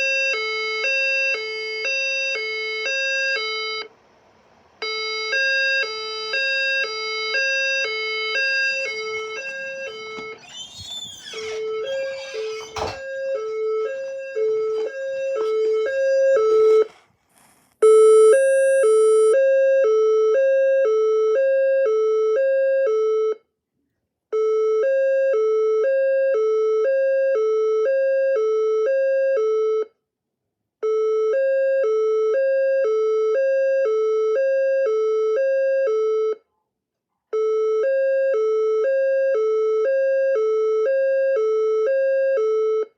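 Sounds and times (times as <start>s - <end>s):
fire alarm two-tone hi-lo signal: 0.0s - 3.9s, 4.8s - 16.8s, 24.4s - 30.0s, 30.8s - 36.4s, 37.4s - 42.9s.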